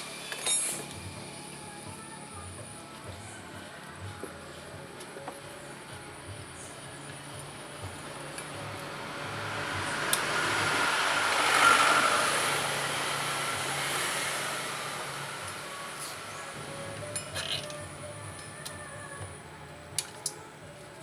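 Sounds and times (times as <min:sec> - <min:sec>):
vehicle passing by: 0:07.6 - 0:17.1.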